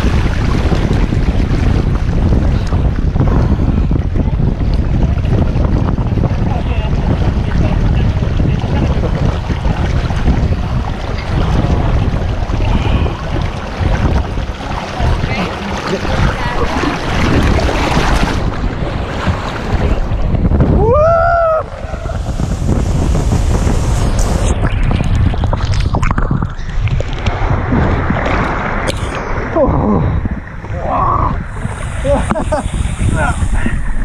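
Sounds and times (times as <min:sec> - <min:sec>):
rushing water: 0:00.0 - 0:34.0
wind buffeting microphone: 0:00.0 - 0:34.0
high rising and falling cry: 0:20.8 - 0:22.3.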